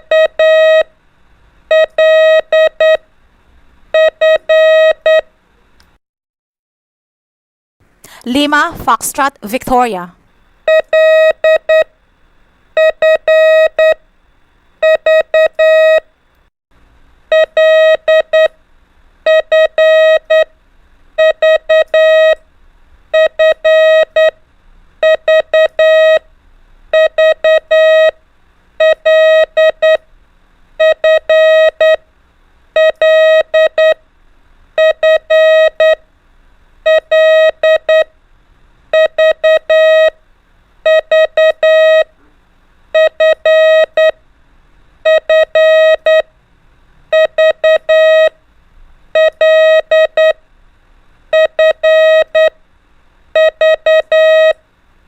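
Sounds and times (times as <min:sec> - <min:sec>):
morse code beeps: 0:00.0 - 0:00.9, 0:01.7 - 0:03.0, 0:04.0 - 0:05.3, 0:10.7 - 0:11.9, 0:12.8 - 0:14.0, 0:14.8 - 0:16.0, 0:17.3 - 0:18.5, 0:19.3 - 0:20.5, 0:21.2 - 0:22.4, 0:23.2 - 0:24.4, 0:25.0 - 0:26.2, 0:26.9 - 0:28.2, 0:28.8 - 0:30.0, 0:30.8 - 0:32.0, 0:32.8 - 0:34.0, 0:34.8 - 0:36.0, 0:36.9 - 0:38.1, 0:38.9 - 0:40.2, 0:40.9 - 0:42.1, 0:43.0 - 0:44.2, 0:45.0 - 0:46.3, 0:47.1 - 0:48.4, 0:49.2 - 0:50.4, 0:51.3 - 0:52.6, 0:53.4 - 0:54.6.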